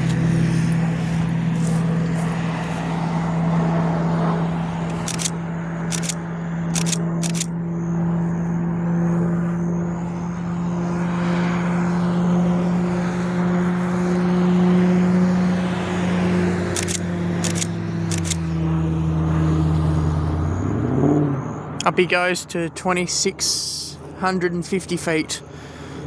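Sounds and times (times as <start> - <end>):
lower engine note: 0.0 - 26.0
turboprop propeller drone: 0.0 - 26.0
camera shutter clicks: 4.9 - 7.5, 16.7 - 18.5.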